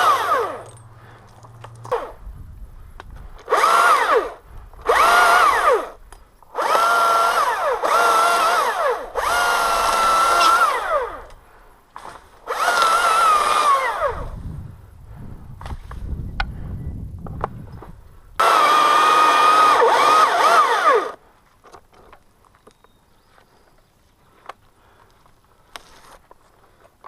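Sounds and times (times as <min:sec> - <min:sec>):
chainsaw revving: 0:00.0 - 0:00.8, 0:01.9 - 0:02.2, 0:03.4 - 0:11.3, 0:12.0 - 0:14.4, 0:18.4 - 0:21.2.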